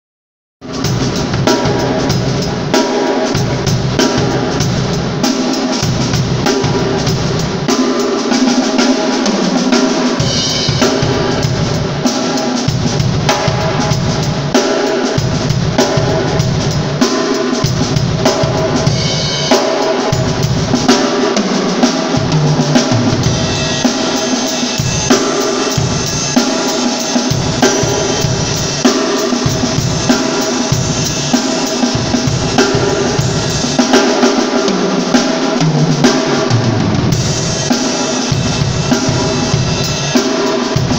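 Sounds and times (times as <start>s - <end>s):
drum kit groove: 0.6s - 40.9s
snare drum: 0.8s - 40.9s
bass drum: 22.1s - 24.2s.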